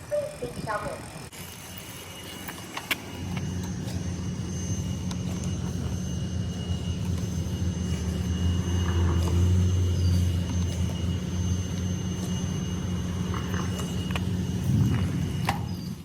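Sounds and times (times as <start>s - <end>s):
wind buffeting microphone: 13.0s - 16.0s.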